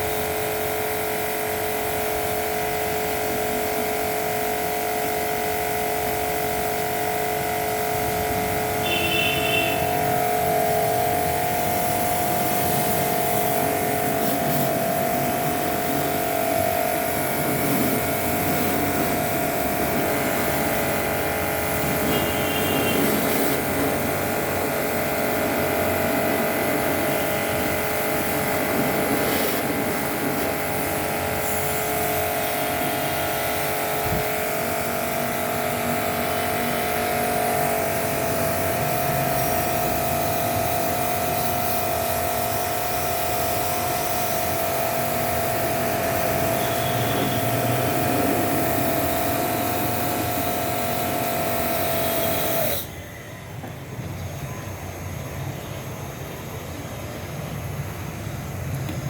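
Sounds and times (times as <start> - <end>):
even hiss: 8.2 - 20.8.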